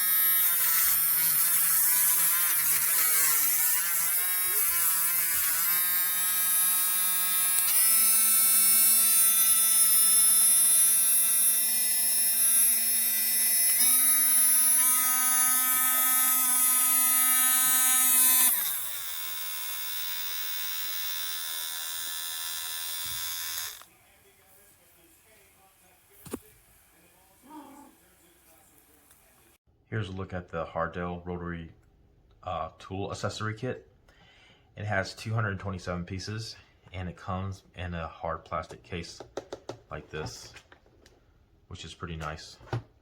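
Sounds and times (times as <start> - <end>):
rotary tool motor whine: 0.0 - 24.0.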